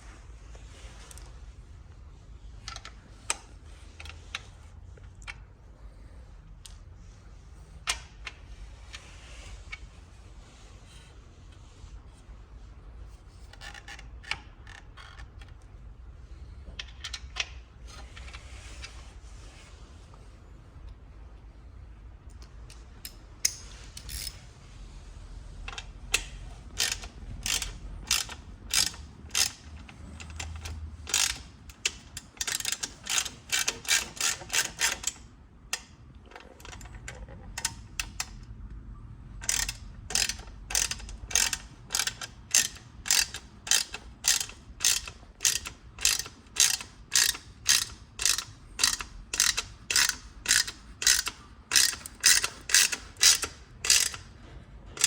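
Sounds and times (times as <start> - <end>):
ratchet wrench clicking: 23.0 - 24.4, 25.7 - 35.9, 39.4 - 54.3.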